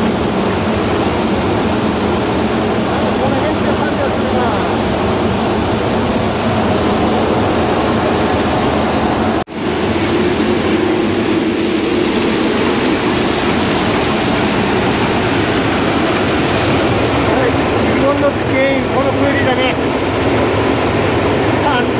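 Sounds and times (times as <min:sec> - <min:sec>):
rice husking machine running: 0:00.0 - 0:21.9
machine knocking: 0:12.0 - 0:21.9.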